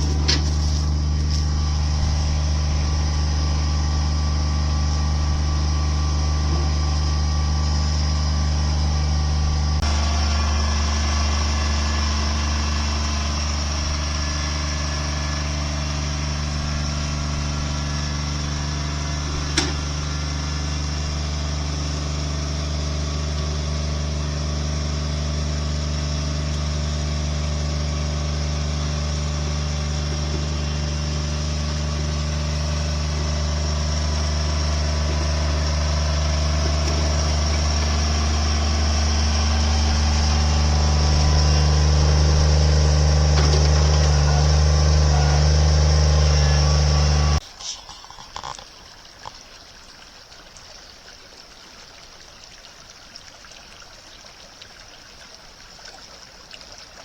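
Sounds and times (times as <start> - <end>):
engine running steadily: 0.0 - 48.6.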